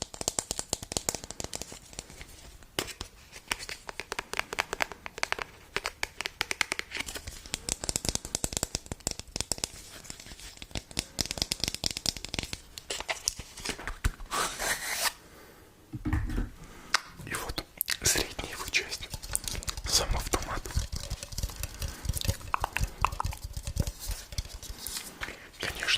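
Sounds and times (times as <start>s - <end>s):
crinkling handling sounds: 18.0s - 25.9s.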